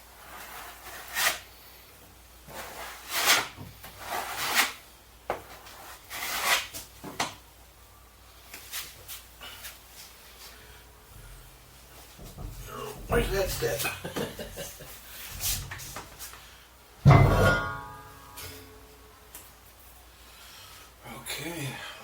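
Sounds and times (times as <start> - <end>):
sliding and rubbing sounds: 0.0 - 1.6, 2.4 - 4.8, 14.8 - 16.4.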